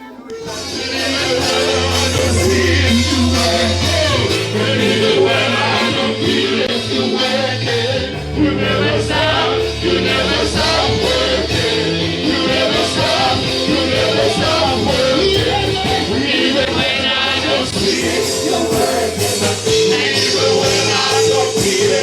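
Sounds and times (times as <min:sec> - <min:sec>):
band playing worship music: 0:00.0 - 0:22.0
voices singing: 0:00.0 - 0:22.0.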